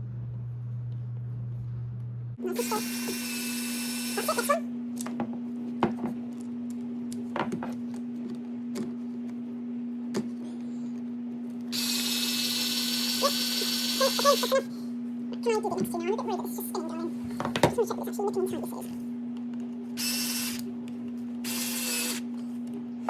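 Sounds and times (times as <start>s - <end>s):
steady low hum: 0.0s - 23.0s
power drill whining: 2.6s - 4.6s, 11.7s - 14.6s, 20.0s - 20.6s, 21.4s - 22.3s.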